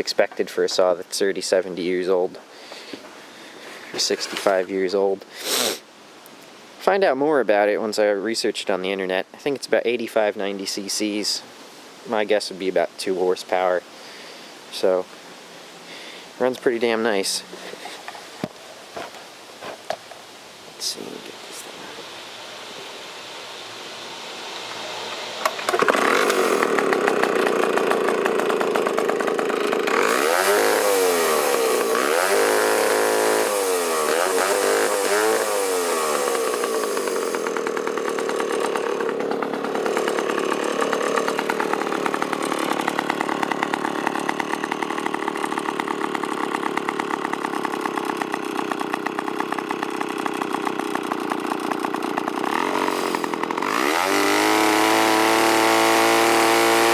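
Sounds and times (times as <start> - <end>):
chainsaw engine revving and idling: 16.5 - 20.2, 25.4 - 56.9.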